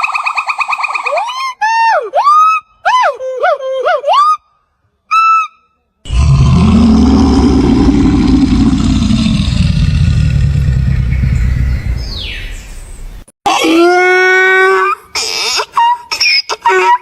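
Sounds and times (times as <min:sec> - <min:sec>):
large animal growling low: 0:06.1 - 0:12.7.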